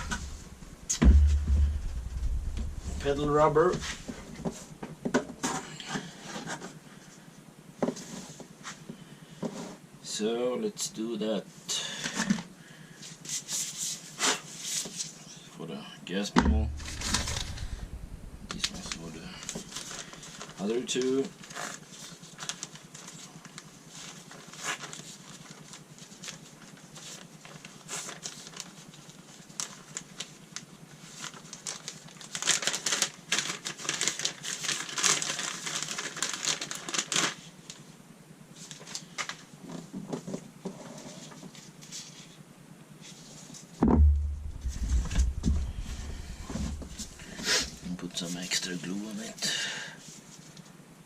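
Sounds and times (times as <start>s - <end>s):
heavy bump and rumble: 0.0s - 4.6s, 16.4s - 19.6s, 43.8s - 47.8s.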